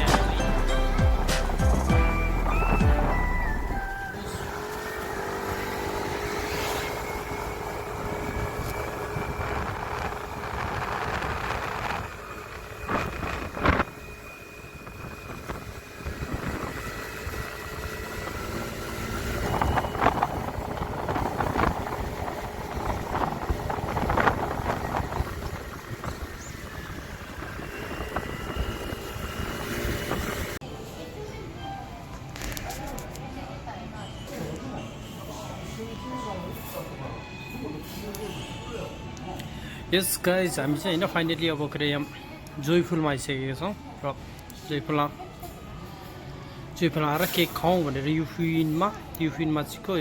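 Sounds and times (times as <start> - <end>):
vehicle low rumble: 0.0 - 30.6.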